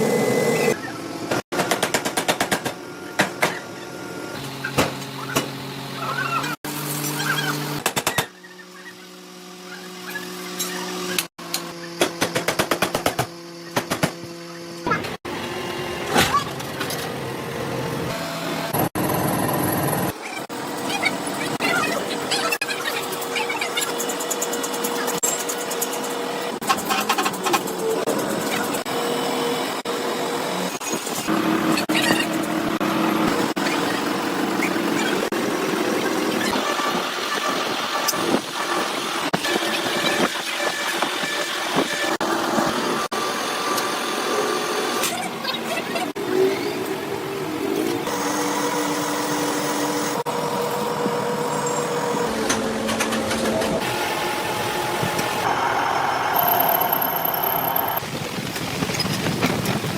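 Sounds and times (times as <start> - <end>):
workshop machinery running: 0.0 - 59.9
heavy machinery droning: 48.1 - 58.0.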